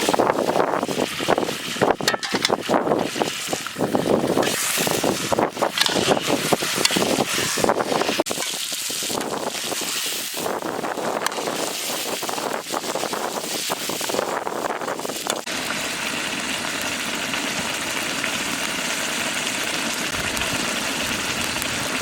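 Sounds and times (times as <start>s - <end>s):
strong wind on microphone: 0.0s - 15.5s.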